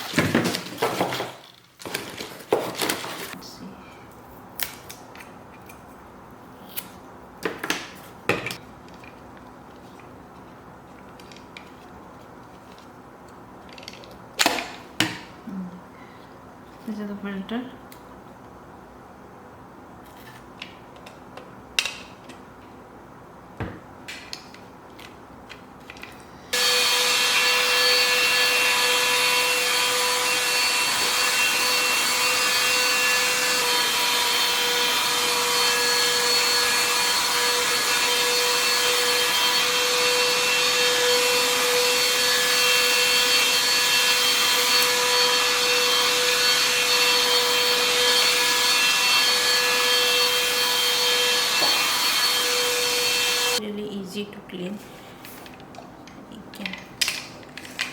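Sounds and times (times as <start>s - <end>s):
handheld vacuum cleaner running: 26.5s - 53.6s.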